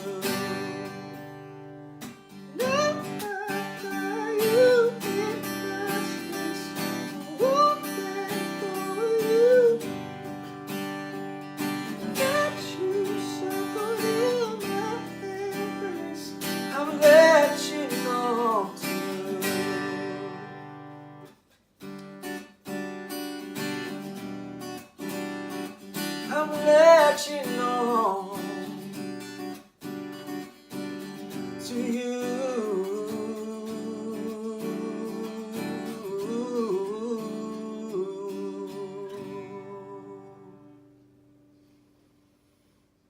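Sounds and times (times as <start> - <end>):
person singing wordless melody: 0.0 - 1.3, 2.5 - 10.1, 11.9 - 20.6, 26.3 - 28.8, 31.6 - 40.8
acoustic guitar strumming: 0.0 - 42.8.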